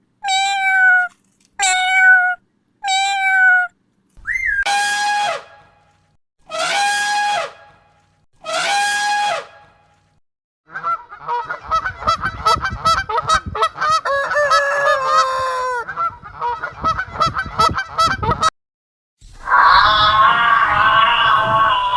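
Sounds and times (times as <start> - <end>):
geese honking: 10.7 - 18.5.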